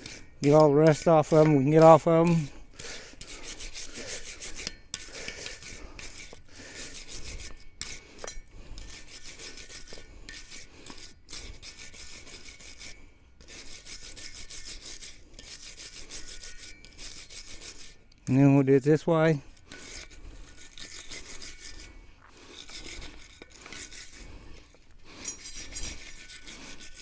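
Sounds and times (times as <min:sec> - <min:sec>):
wire brush scraping metal: 0:00.0 - 0:27.0.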